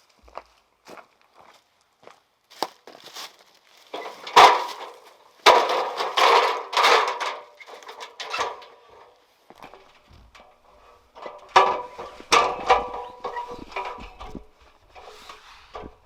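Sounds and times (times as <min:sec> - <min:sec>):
scraping handling noises: 0:02.9 - 0:16.0
knocks and clattering: 0:04.0 - 0:16.0.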